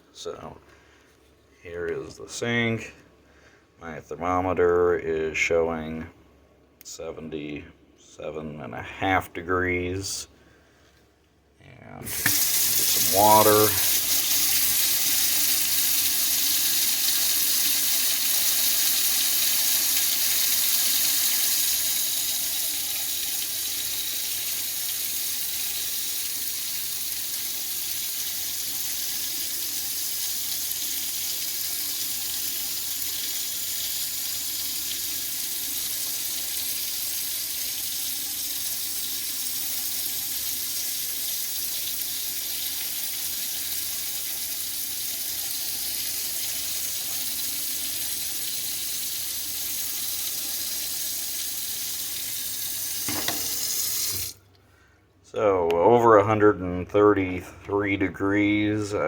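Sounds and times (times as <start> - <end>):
faucet running water: 12.0 - 54.6.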